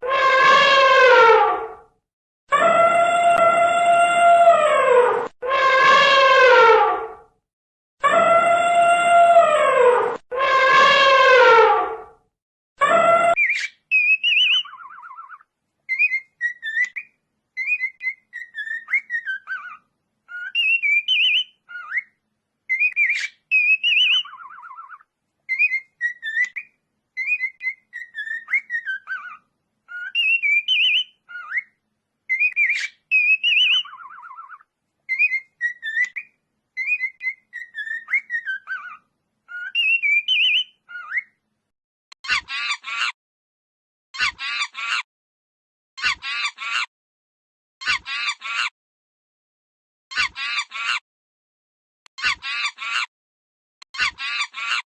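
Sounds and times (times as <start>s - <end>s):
bird whistling: 13.3s - 41.4s.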